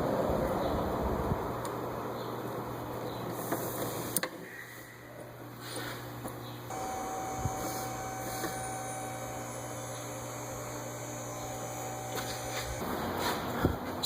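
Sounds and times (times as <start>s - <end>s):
small motor humming and whining: 6.7s - 12.9s.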